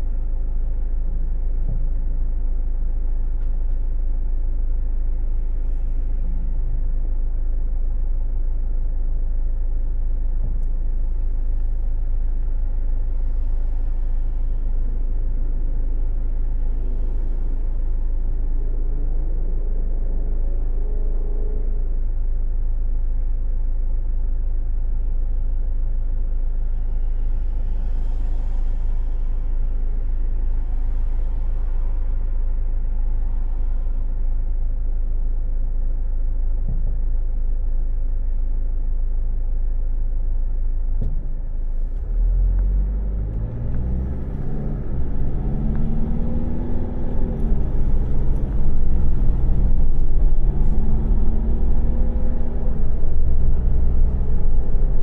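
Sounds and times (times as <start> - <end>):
car engine idling: 41.1 - 55.0
car accelerating through gears: 42.1 - 55.0.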